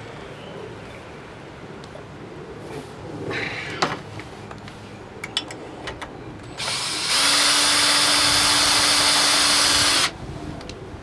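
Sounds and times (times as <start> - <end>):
power tool running: 6.6 - 10.1.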